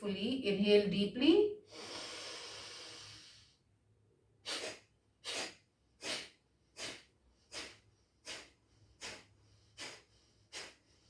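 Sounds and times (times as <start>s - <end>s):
deep inhale through nose: 1.6s - 3.7s, 4.4s - 11.0s
short forceful exhalations: 4.4s - 11.0s.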